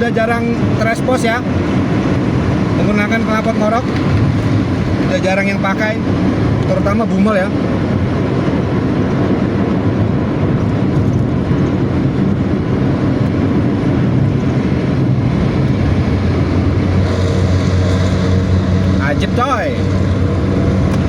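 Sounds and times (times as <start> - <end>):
bus engine rumble: 0.0 - 21.0
road noise: 0.0 - 21.0.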